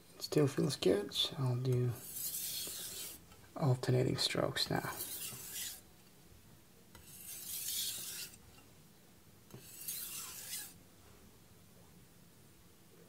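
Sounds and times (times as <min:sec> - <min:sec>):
knife scraping on whetstone: 0:02.0 - 0:03.2, 0:04.9 - 0:05.8, 0:07.0 - 0:08.4, 0:09.5 - 0:10.8.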